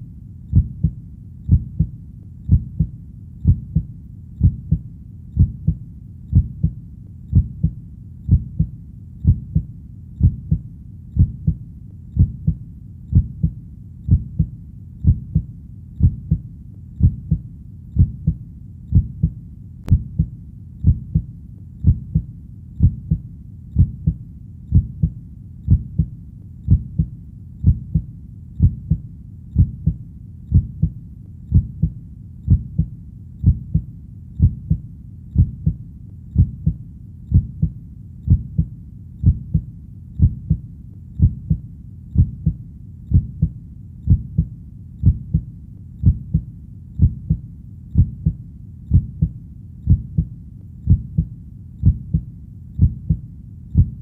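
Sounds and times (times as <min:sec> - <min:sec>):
faint low hum: 0:00.0 - 0:54.0
heartbeat double thud: 0:19.9 - 0:21.2.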